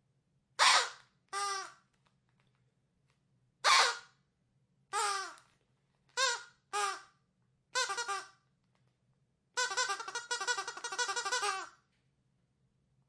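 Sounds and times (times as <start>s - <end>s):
squeaky dog toy squeaking: 0.6s - 1.8s, 3.6s - 4.2s, 4.9s - 5.5s, 6.2s - 7.1s, 7.8s - 8.4s, 9.6s - 11.8s.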